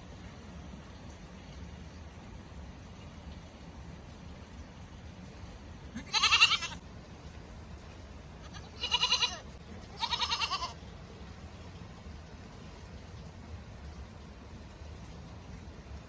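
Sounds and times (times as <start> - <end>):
goat bleating: 5.9 - 6.8, 8.4 - 10.8.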